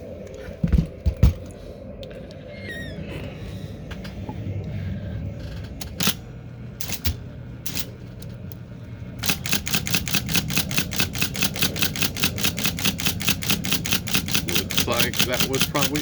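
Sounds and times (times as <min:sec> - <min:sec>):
typewriter motor hum: 0:05.7 - 0:08.6, 0:09.2 - 0:16.0
typewriter keystrokes: 0:05.9 - 0:06.2, 0:06.8 - 0:07.9, 0:09.2 - 0:16.0.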